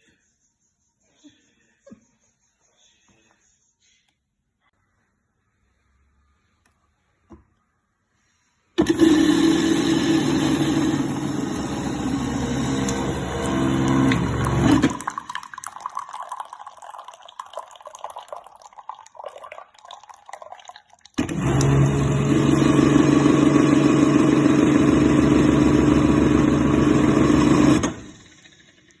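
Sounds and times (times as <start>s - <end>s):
juicer motor humming: 8.8s - 29.0s
liquid dripping: 12.8s - 21.2s.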